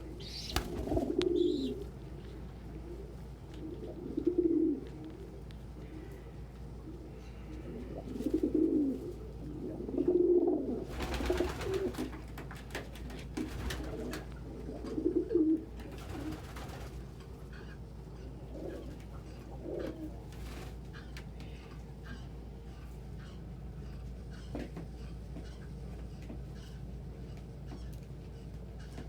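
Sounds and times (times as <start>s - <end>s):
pigeons cooing: 0.0s - 12.2s, 13.4s - 21.2s.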